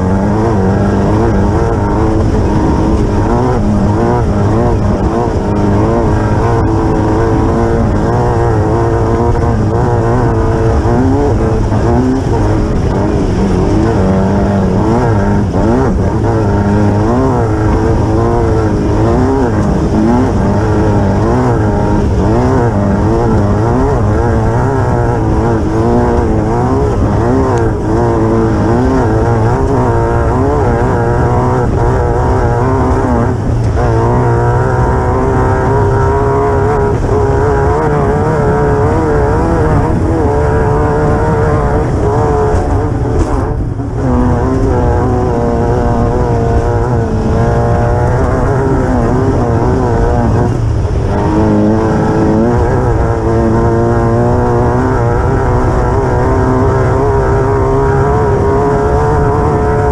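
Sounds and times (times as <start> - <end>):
buggy engine revving: 0.0 - 59.9
chassis rumble and wind noise: 0.0 - 59.9.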